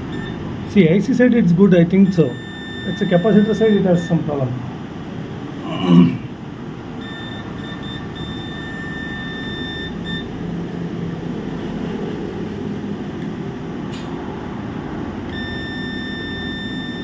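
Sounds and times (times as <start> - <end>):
multimeter continuity beep: 0.0 - 4.4, 7.0 - 10.4, 15.2 - 17.0.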